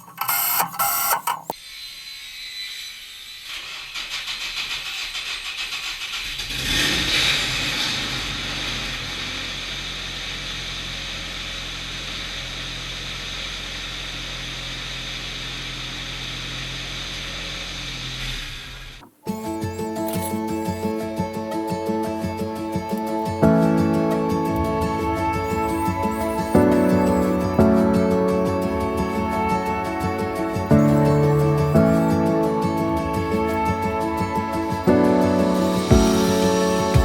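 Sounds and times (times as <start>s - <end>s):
wood chipper engine starting and running: 3.1s - 20.8s.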